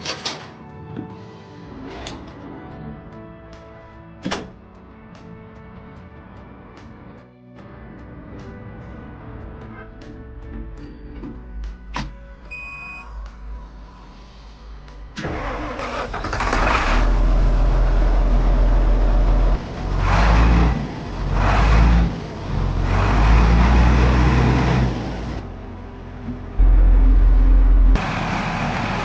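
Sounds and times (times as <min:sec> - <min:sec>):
diesel engine starting and revving: 0:15.1 - 0:29.0.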